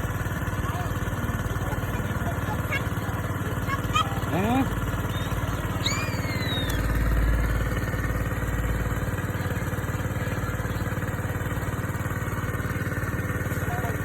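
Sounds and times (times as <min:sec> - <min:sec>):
small engine running: 0:00.0 - 0:14.0
high falling chirp: 0:05.0 - 0:07.0.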